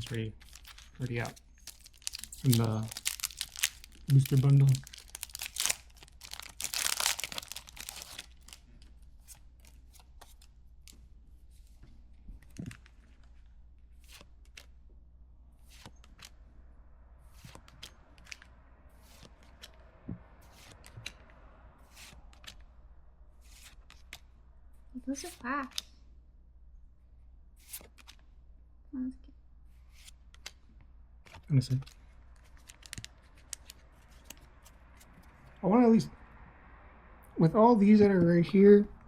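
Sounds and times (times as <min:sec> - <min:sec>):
foil wrapper tearing with crinkle: 0:01.6 - 0:08.6.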